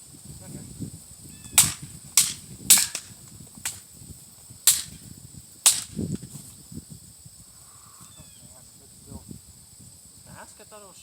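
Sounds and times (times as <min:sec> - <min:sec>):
sharp cracks: 0:01.5 - 0:03.9, 0:04.6 - 0:06.3.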